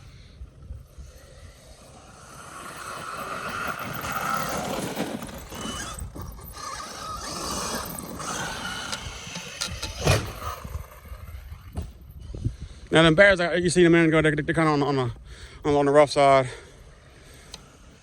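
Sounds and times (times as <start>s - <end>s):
tyres running over ground: 0.0s - 12.2s
electric motor whining: 0.8s - 12.0s.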